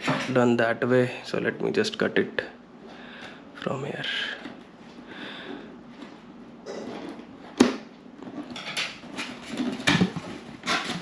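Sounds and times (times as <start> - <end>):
packaging rustling and scraping: 4.0 - 11.0.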